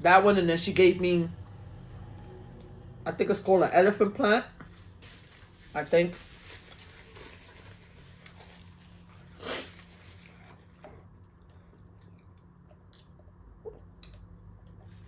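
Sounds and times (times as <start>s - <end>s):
person chewing food: 8.2s - 15.0s.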